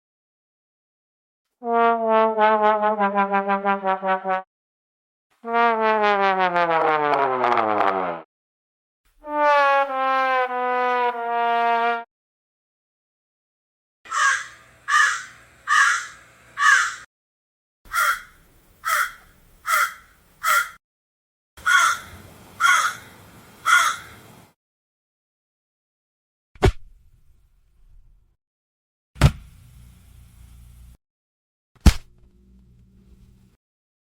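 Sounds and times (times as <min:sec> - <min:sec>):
crow cawing: 0:14.1 - 0:17.1, 0:17.9 - 0:20.8, 0:21.6 - 0:24.2.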